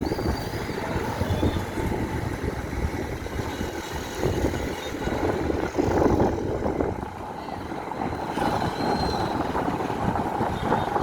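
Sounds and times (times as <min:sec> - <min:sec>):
freight train rumbling: 0:00.0 - 0:11.0.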